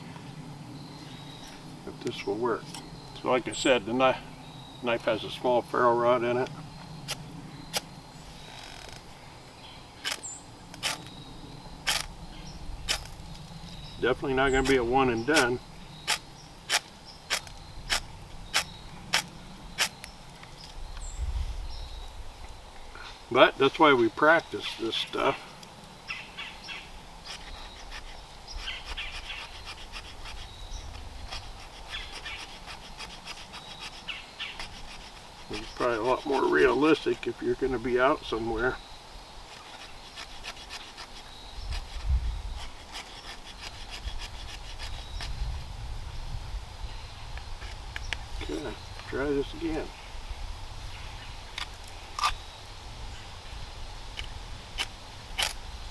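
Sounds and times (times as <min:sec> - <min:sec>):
ferro rod scraping: 0:10.0 - 0:11.2, 0:27.2 - 0:38.8, 0:39.5 - 0:45.4.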